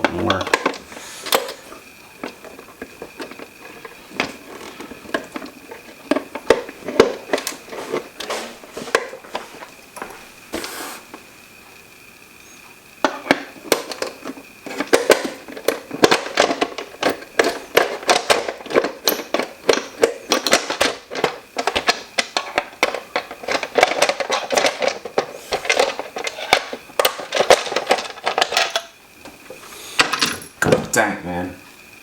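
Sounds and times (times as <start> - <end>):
plastic parts clicking and knocking: 13.0 - 28.9.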